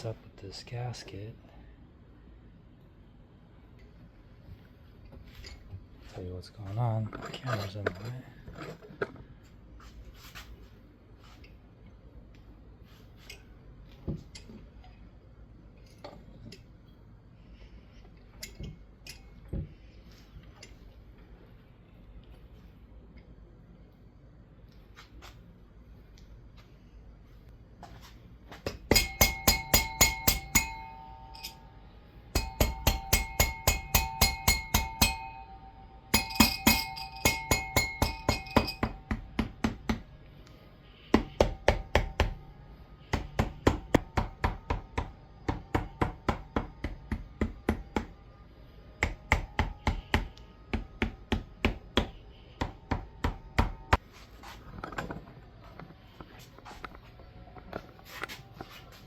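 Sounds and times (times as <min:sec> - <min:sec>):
metal ringing: 0:28.7 - 0:40.2.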